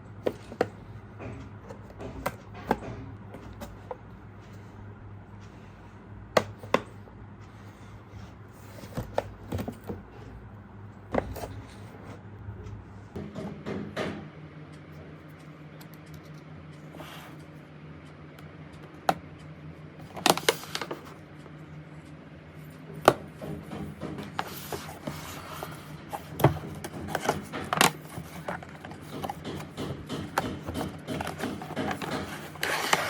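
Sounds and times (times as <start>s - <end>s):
low steady hum: 0.0s - 33.0s
handling clicks and knocks: 23.0s - 33.0s.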